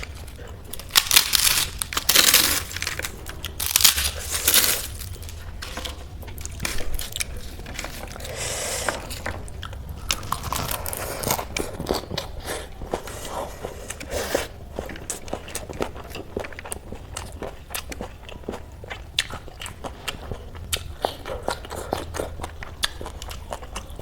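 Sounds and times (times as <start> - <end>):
crunching bites of crisp food: 0.0 - 8.4
person chewing: 0.0 - 24.0.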